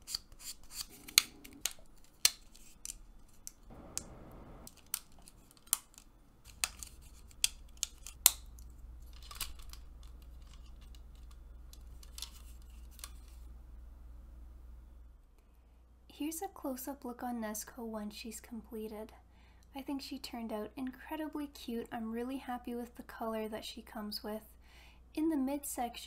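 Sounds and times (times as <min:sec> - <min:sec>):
plastic parts clicking and snipping: 0:00.0 - 0:04.1, 0:04.7 - 0:13.4
faint low hum: 0:00.0 - 0:26.0.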